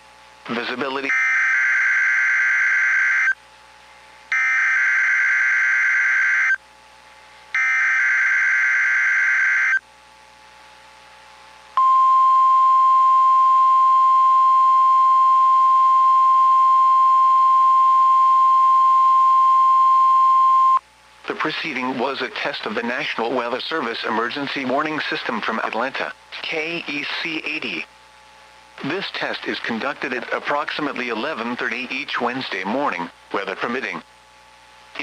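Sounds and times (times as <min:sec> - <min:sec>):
steady alarm tone: 0:01.1 - 0:03.4, 0:04.3 - 0:06.6, 0:07.5 - 0:09.8.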